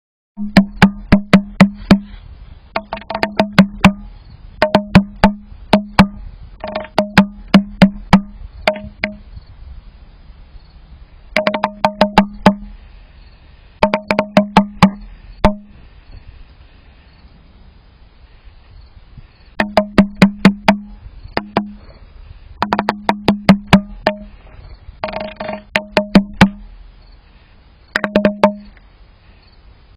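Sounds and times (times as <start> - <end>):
woodpecker pecking: 0.5 - 9.2, 11.3 - 12.8, 13.8 - 15.8, 19.5 - 24.4, 25.0 - 26.8, 27.9 - 28.8.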